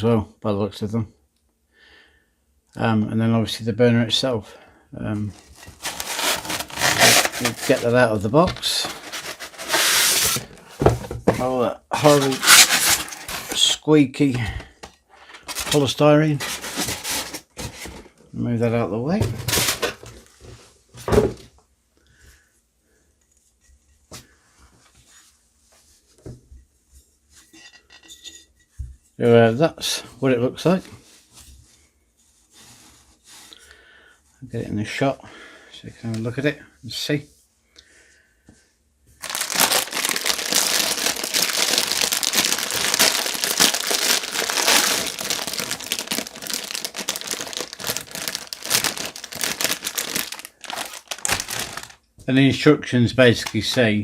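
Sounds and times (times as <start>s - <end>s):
packaging crinkling and rustling: 5.2s - 13.8s, 15.3s - 18.1s, 19.3s - 20.3s, 39.2s - 52.1s, 53.2s - 53.9s.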